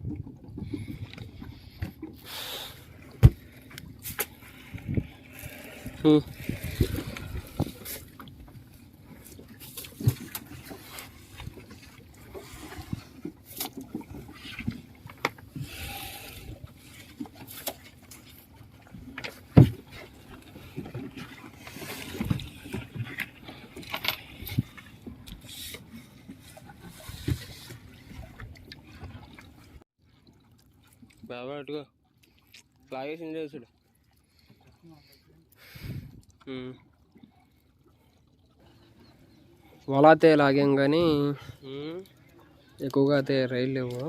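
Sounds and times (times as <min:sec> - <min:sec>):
water splashing and dripping: 0:00.0 - 0:38.9
knocks against boat: 0:03.2 - 0:03.4, 0:19.5 - 0:19.9.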